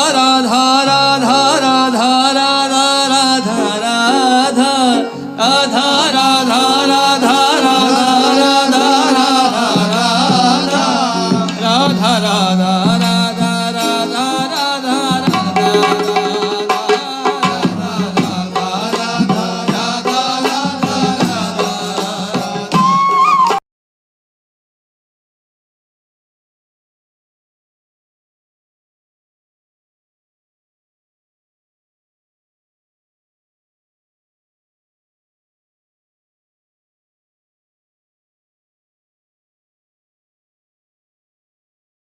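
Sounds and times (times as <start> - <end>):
person singing ornamented melody: 0.0 - 23.5
tabla: 0.0 - 23.6.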